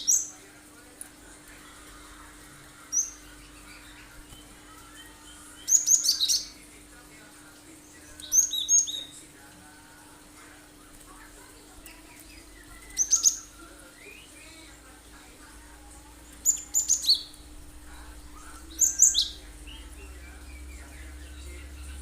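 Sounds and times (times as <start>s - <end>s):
faint bird chirping: 1.6s - 22.0s.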